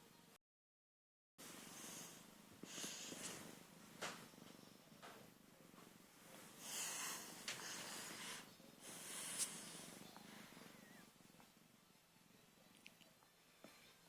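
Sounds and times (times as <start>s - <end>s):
kitten breathy exhalations: 1.6s - 3.6s, 6.5s - 11.0s.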